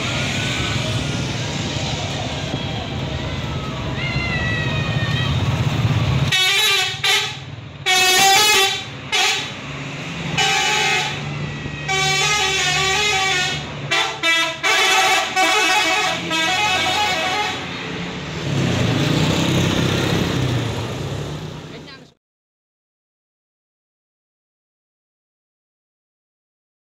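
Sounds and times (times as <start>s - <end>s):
vehicle horn blasts: 6.3s - 9.5s, 10.4s - 11.2s, 11.9s - 17.7s.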